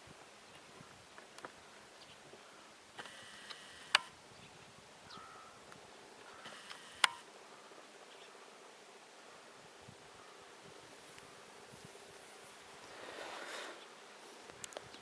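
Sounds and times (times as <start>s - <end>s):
bird calling: 2.0s - 7.2s
sharp click: 6.5s - 7.2s.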